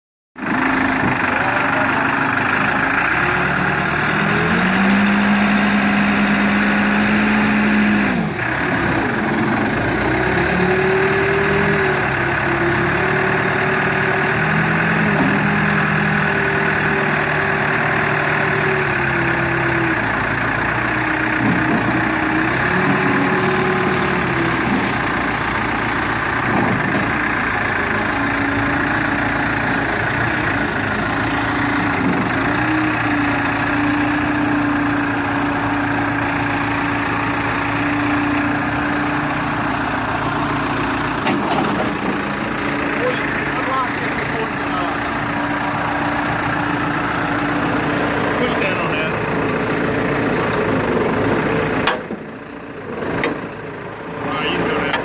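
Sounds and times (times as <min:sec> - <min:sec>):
diesel engine running: 0:00.4 - 0:55.0.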